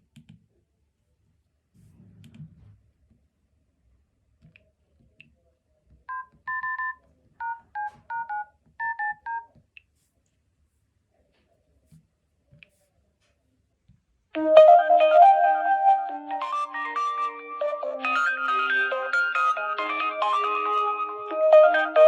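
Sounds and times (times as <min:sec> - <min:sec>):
phone ringtone melody: 0:06.1 - 0:09.4, 0:14.4 - 0:22.0
phone keypad beeps: 0:06.1 - 0:09.5.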